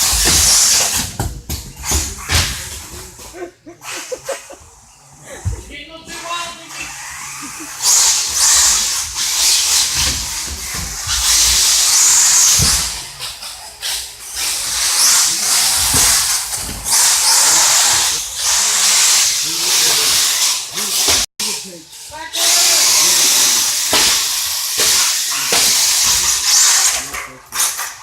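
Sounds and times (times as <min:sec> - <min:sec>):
radio-controlled cars whirring: 0:00.0 - 0:28.0.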